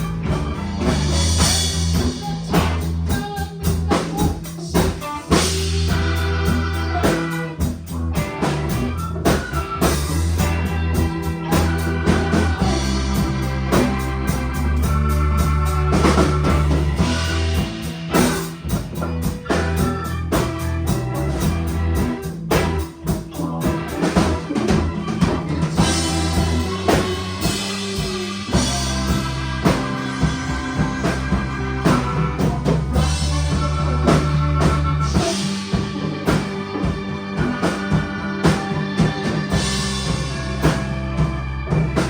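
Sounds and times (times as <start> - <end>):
bass guitar: 0.0 - 42.0
drum kit steady beat: 0.0 - 42.0
electric guitar: 0.0 - 42.0
keyboard: 0.0 - 42.0.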